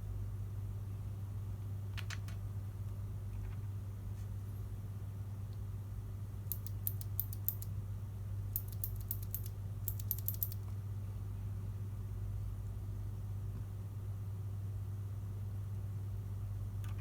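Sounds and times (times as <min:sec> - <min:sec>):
mechanical keyboard clicks: 0:06.5 - 0:07.7, 0:08.6 - 0:10.6.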